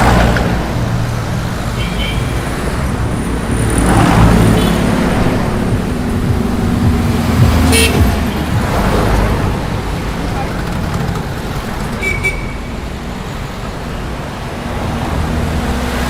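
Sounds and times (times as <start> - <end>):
vehicle engine passing: 0.0 - 12.0
city traffic: 0.0 - 16.0
vehicle horn toot: 7.1 - 8.7, 12.0 - 12.7.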